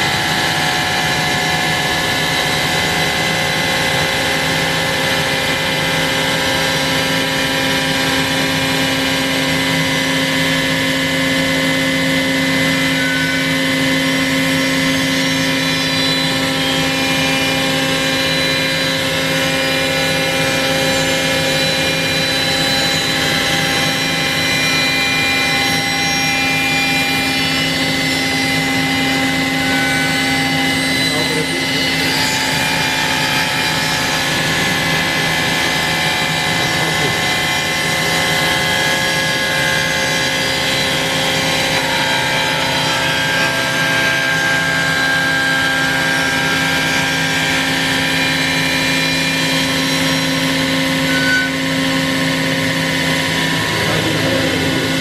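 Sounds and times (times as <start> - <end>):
router spindle milling wood: 11.9 - 55.0.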